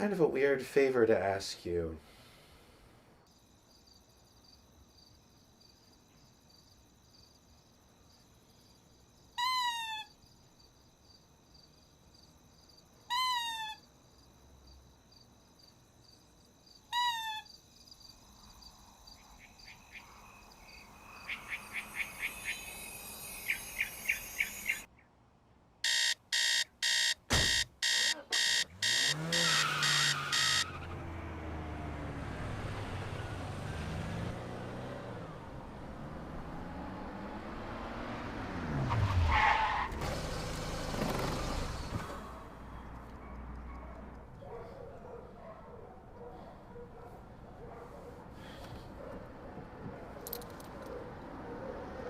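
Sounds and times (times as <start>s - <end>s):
alarm clock beeping: 25.8s - 30.7s.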